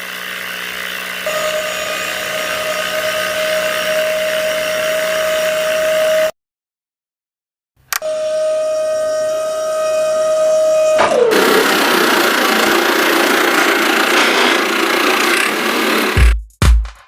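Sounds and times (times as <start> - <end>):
small electric motor whining: 0.0 - 6.3, 7.9 - 16.3.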